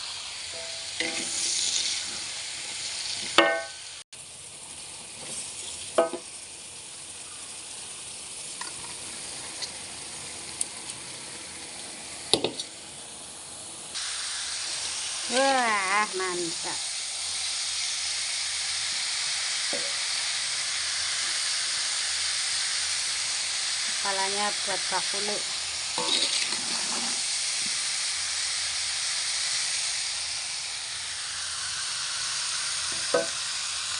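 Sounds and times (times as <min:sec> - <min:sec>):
fish frying in a pan: 0:00.0 - 0:33.9
food sizzling in hot oil: 0:00.0 - 0:33.9
metal utensil knocking on pan: 0:03.4 - 0:03.8, 0:06.0 - 0:06.2, 0:33.0 - 0:33.4.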